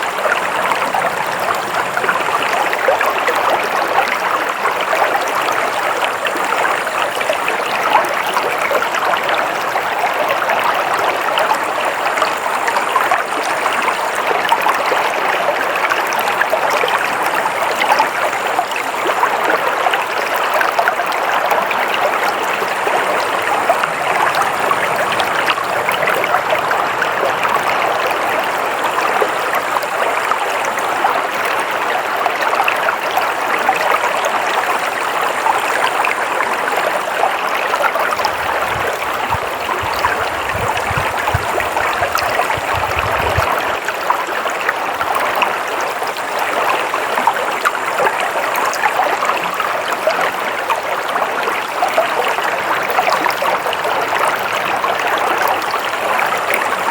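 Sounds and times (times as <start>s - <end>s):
stream water rushing: 0.0s - 56.9s.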